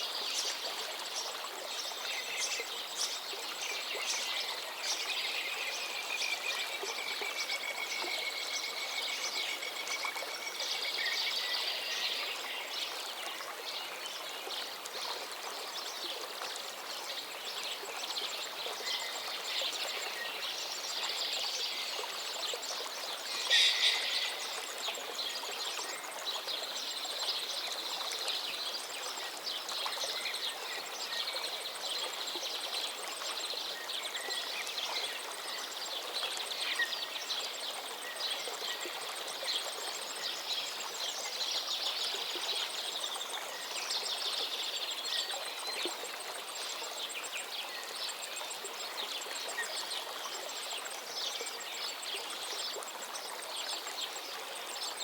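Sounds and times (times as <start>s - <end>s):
river water flowing: 0.0s - 55.0s
small birds chirping: 23.2s - 26.0s
bird trill: 23.4s - 24.4s.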